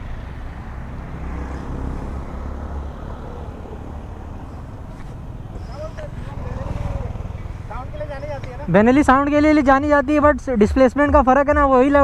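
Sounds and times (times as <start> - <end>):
road noise: 0.0 - 12.0
vehicle engine rumble: 0.0 - 12.0.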